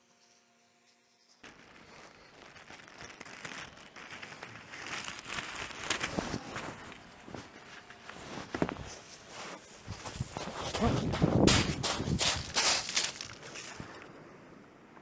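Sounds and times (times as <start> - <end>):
footsteps crunching on stones: 4.8 - 14.1.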